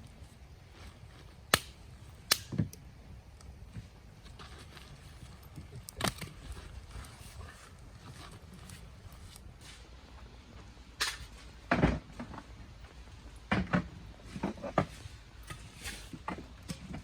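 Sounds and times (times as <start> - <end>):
campfire crackling and popping: 0.0 - 9.5.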